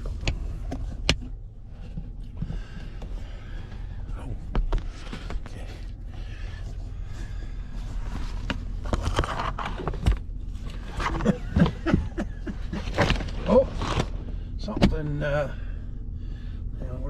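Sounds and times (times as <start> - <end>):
cables and plugs clicking and rustling: 0.0 - 6.9, 7.8 - 14.2
vehicle low rumble: 0.0 - 17.0.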